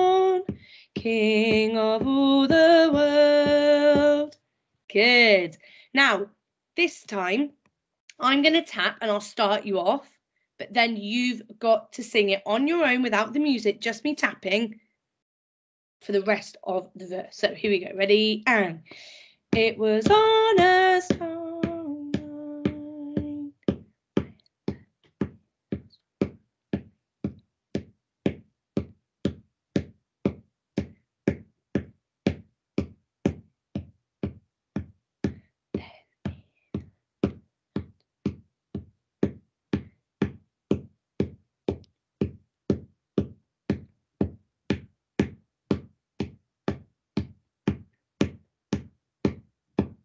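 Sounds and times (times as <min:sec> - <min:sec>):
hand tapping a beat: 0:00.0 - 0:04.3, 0:19.5 - 0:50.0
person singing unaccompanied: 0:00.0 - 0:04.4, 0:19.6 - 0:23.8.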